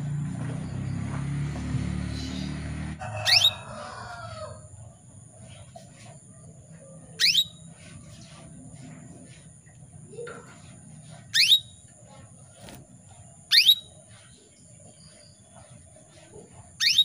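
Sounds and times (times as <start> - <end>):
canary call notes: 3.1 - 3.9, 7.1 - 7.8, 11.1 - 11.9, 13.5 - 14.3, 16.8 - 17.0
faint bird chirps: 5.5 - 8.5, 9.2 - 17.0.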